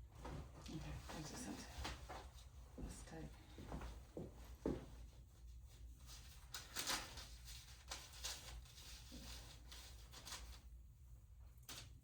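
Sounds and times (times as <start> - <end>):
faint clicks and rustles: 0.1 - 10.8.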